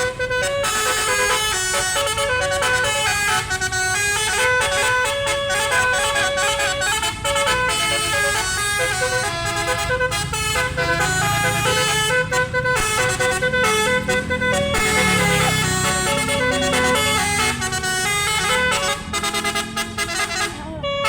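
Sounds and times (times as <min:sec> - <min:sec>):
multi-tone bus horn melody: 0:00.0 - 0:21.0.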